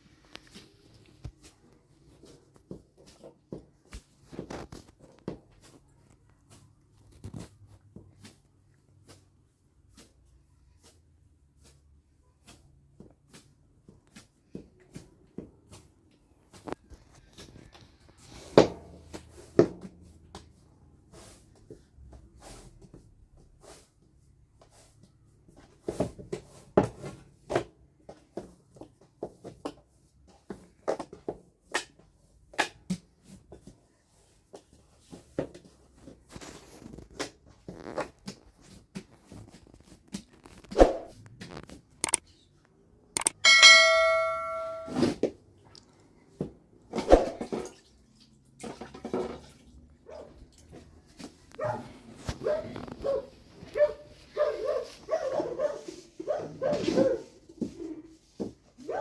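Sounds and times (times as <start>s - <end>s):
objects knocking and clattering: 48.5s - 49.6s.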